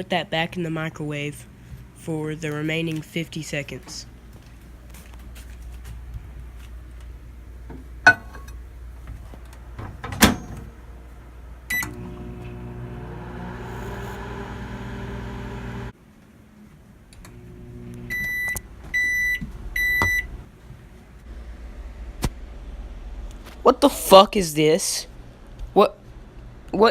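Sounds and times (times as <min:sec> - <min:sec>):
microwave oven humming: 0:06.2 - 0:16.0, 0:17.2 - 0:20.5
keypad beep: 0:18.1 - 0:20.3.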